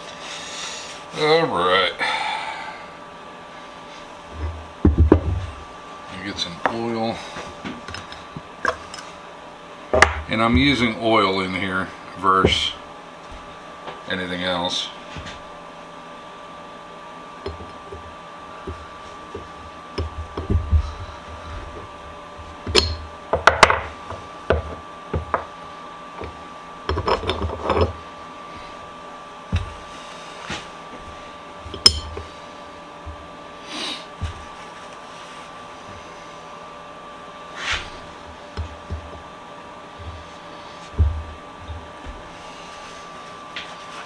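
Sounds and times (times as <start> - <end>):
metal parts knocking and clinking: 22.7 - 23.9, 26.2 - 28.0, 31.7 - 32.2.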